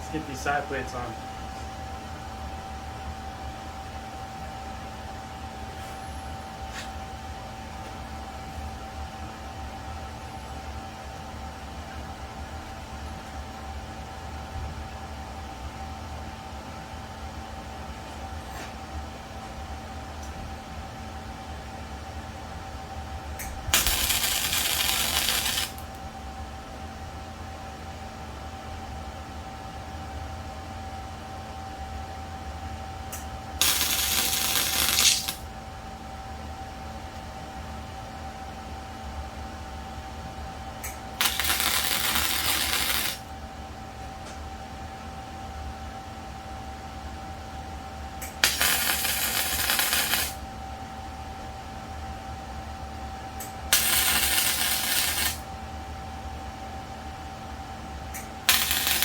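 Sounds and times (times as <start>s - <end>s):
steady low hum: 0.0s - 59.0s
electric arc welder crackling: 23.5s - 26.0s, 33.6s - 35.5s, 41.1s - 43.3s, 48.2s - 50.4s, 53.7s - 55.5s, 58.2s - 59.0s.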